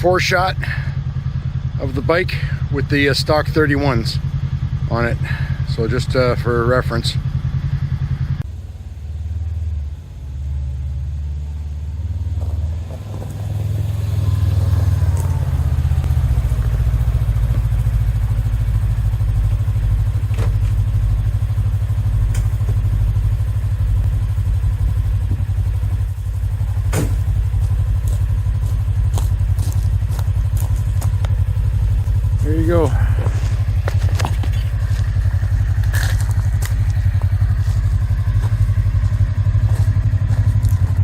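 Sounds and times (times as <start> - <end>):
vehicle engine idling: 0.0 - 41.0.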